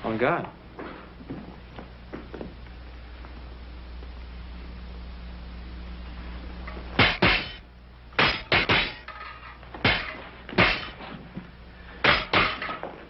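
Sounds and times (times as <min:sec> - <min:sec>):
fencing blades clashing: 0:08.2 - 0:11.0.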